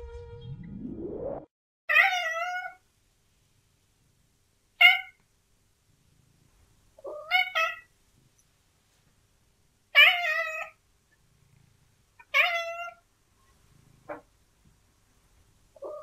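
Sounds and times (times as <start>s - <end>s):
cat meowing: 1.9s - 2.8s, 4.8s - 5.2s, 7.0s - 7.9s, 10.0s - 10.8s, 12.2s - 13.0s.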